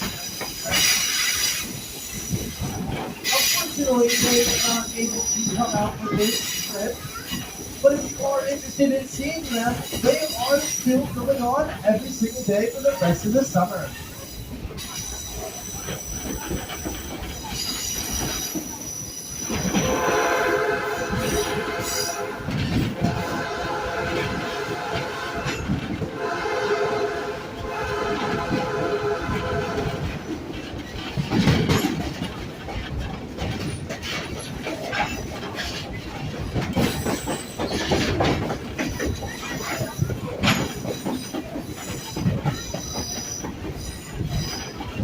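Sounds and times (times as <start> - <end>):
train wheels squealing: 0.0 - 11.4, 12.0 - 22.2, 38.8 - 45.0
high wheel squeal: 13.9 - 22.3
train horn blast: 19.7 - 30.3.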